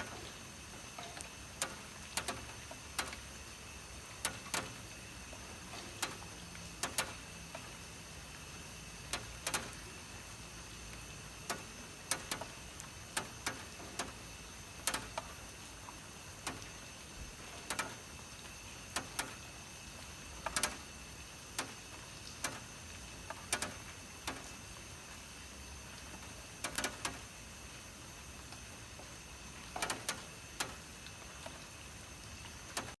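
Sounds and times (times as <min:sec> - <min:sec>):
raindrops tapping: 0:00.0 - 0:03.2, 0:04.2 - 0:07.7, 0:09.1 - 0:09.8, 0:10.9 - 0:19.4, 0:20.0 - 0:20.9, 0:21.5 - 0:24.6, 0:26.0 - 0:27.2, 0:29.0 - 0:31.7, 0:32.4 - 0:33.0
rain hissing on a roof: 0:00.0 - 0:33.0.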